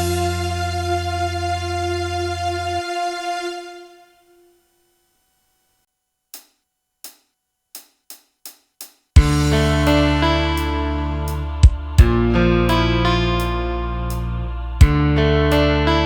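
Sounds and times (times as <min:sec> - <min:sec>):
full band hit: 0:09.2 - 0:12.9, 0:14.8 - 0:15.1
keyboard dance music: 0:09.2 - 0:16.0.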